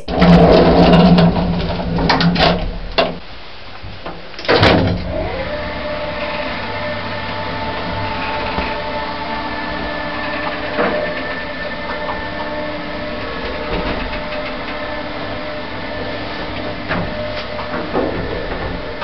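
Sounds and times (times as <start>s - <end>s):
lift motor hum and whine: 5.0s - 19.0s.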